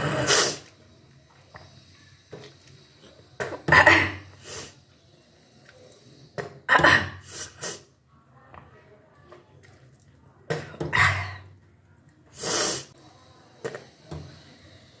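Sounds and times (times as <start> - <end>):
person retching and vomiting: 3.4 - 4.4.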